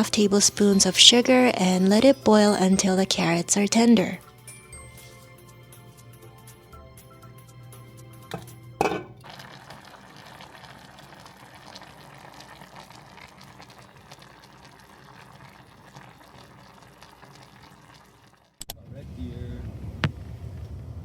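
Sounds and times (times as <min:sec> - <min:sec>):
broth bubbling in a pan: 0:08.0 - 0:18.6.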